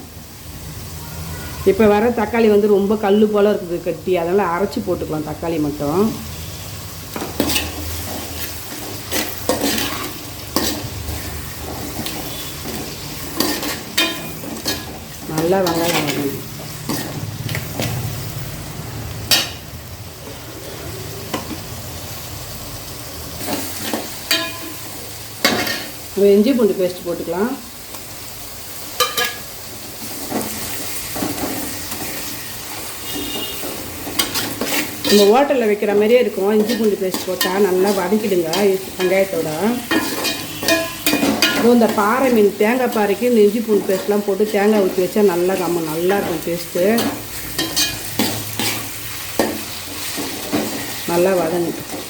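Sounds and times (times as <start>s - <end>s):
onions sizzling in oil: 0.0s - 52.0s
spoon stirring in pot: 7.1s - 18.0s, 33.0s - 35.5s, 36.5s - 42.2s
spoon clinking against pot: 29.0s - 29.4s, 39.9s - 41.7s.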